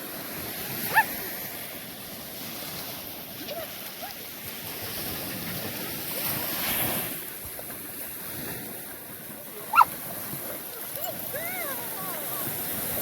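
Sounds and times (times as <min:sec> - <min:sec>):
ocean surf washing: 0:00.0 - 0:13.0
high-pitched cry: 0:10.8 - 0:12.5.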